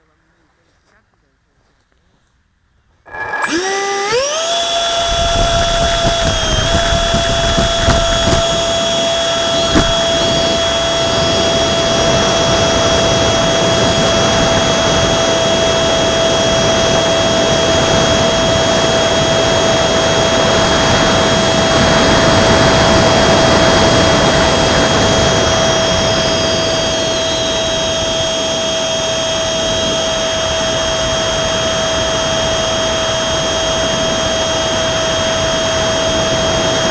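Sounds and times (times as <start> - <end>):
electric ducted fan whine: 3.0 - 36.9
rushing air: 3.1 - 12.1.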